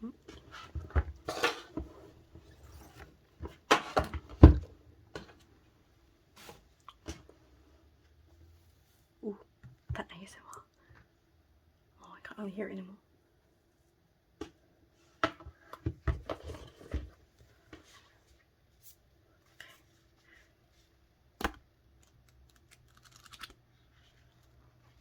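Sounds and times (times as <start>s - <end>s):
plastic and card rustling: 21.4s - 24.6s.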